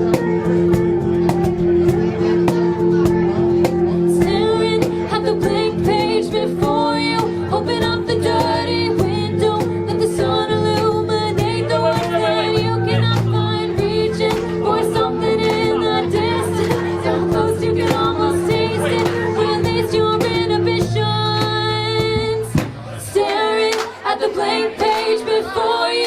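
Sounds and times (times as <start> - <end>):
live pop-rock band playing: 0.0 - 22.8
person singing wordless melody: 3.7 - 22.5.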